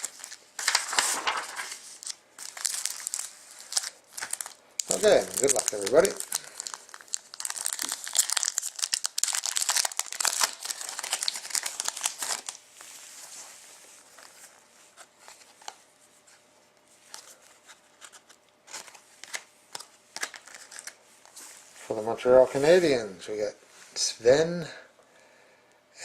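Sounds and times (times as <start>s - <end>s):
cards rustling and clicking: 0.0s - 12.6s, 17.1s - 21.5s
foil wrapper crinkling and tearing: 0.0s - 12.6s.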